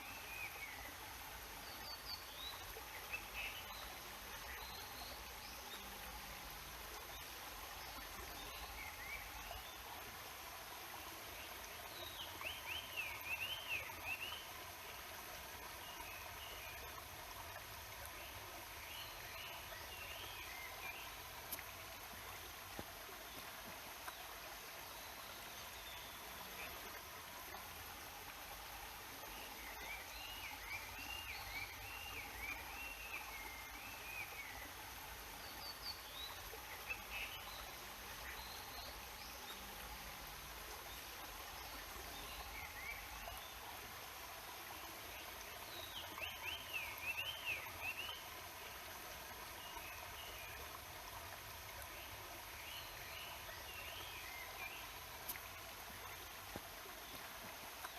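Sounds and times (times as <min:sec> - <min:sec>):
mountain stream rushing: 0:00.0 - 0:57.9
songbird singing: 0:44.7 - 0:48.3.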